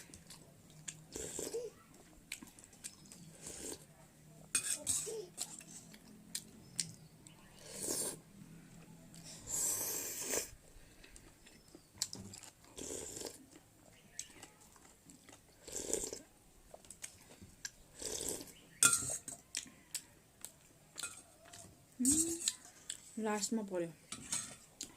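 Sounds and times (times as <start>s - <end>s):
person chewing: 0.0s - 3.8s, 9.1s - 18.6s.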